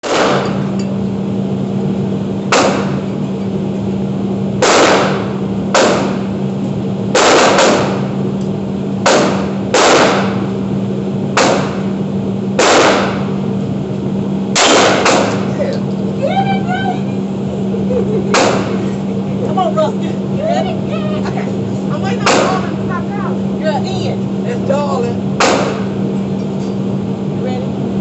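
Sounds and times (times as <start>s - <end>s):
gunshots with echo: 0.0s - 0.7s, 4.6s - 6.2s, 7.2s - 8.1s, 9.0s - 10.4s, 11.4s - 11.9s, 12.6s - 13.3s, 14.6s - 15.5s, 18.3s - 18.8s, 25.4s - 26.0s
steady low hum: 0.0s - 28.0s.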